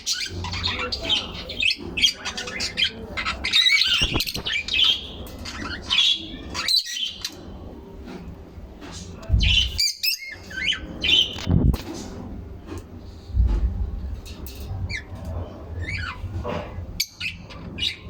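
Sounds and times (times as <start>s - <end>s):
birds chirping and squawking: 0.0s - 18.0s.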